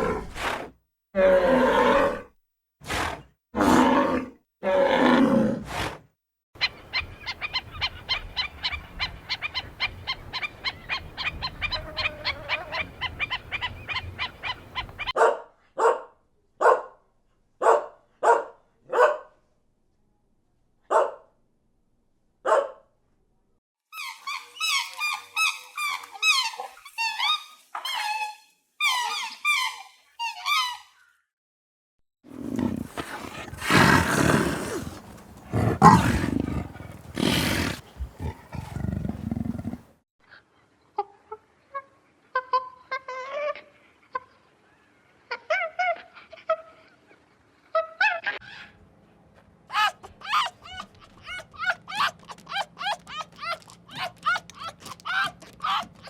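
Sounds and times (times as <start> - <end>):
drawn-out farm animal calls: 32.4 - 39.8
fast pulsed animal calls: 32.4 - 39.8.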